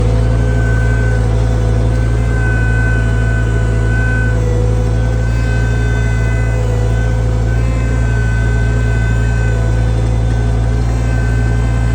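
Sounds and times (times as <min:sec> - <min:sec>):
high wavering whine: 0:00.0 - 0:11.9
skid steer engine running: 0:00.0 - 0:11.9.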